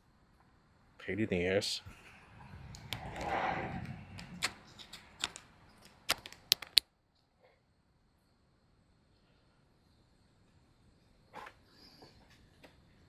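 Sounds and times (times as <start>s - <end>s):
metallic clicks of tools: 6.1s - 6.8s.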